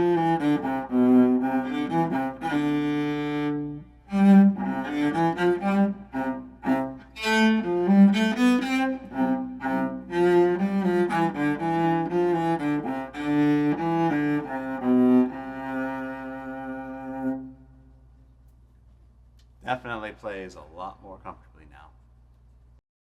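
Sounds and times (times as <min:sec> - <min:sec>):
cello played with bow: 0:00.0 - 0:17.9.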